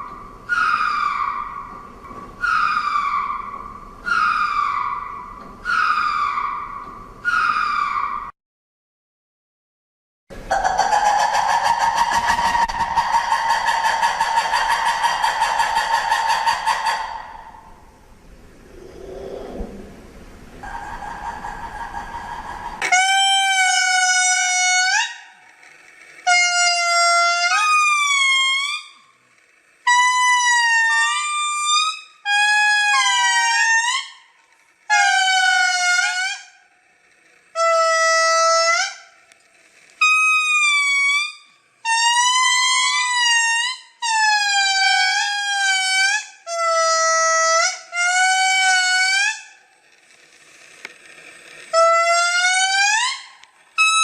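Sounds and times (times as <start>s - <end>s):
lemur calls: 0.0s - 8.3s, 10.5s - 18.0s, 18.6s - 25.4s.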